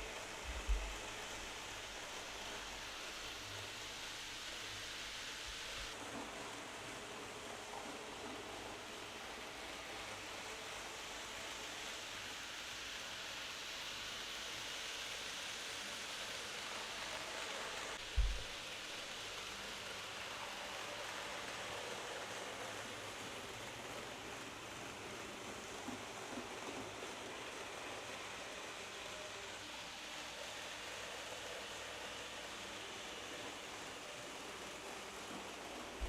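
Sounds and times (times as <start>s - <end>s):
steady background hiss: 0.0s - 36.0s
low thump: 18.2s - 18.5s.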